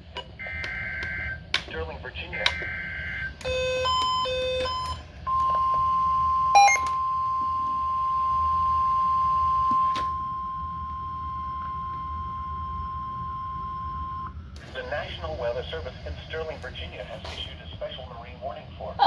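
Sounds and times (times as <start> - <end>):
steady warning alarm tone: 0.1 - 16.8
alternating two-pitch beeps: 2.6 - 14.2.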